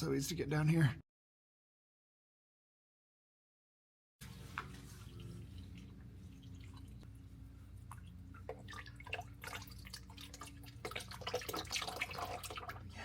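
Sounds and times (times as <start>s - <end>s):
oil dripping and splashing: 4.2s - 13.0s
steady low hum: 4.2s - 13.0s.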